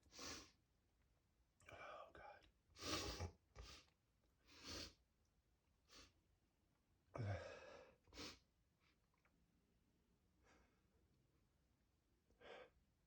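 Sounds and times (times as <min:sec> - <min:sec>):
man breathing heavily and sighing: 0:07.1 - 0:08.4.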